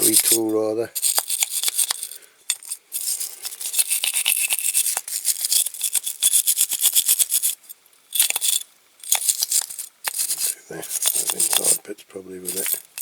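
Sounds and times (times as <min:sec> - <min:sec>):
wire brush scrubbing metal: 0:00.0 - 0:06.9, 0:09.5 - 0:11.8.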